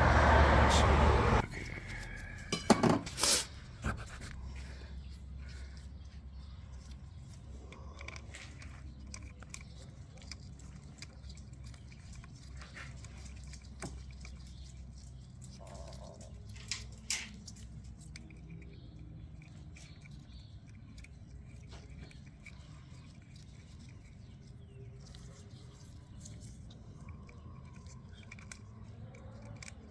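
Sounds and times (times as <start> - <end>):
small metal parts clicking: 6.8 - 24.4, 25.0 - 29.9.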